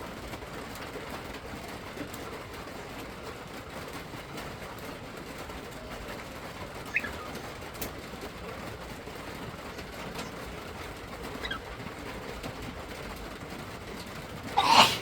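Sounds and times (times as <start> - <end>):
cockatiel chirping: 6.9 - 7.4, 11.3 - 11.7.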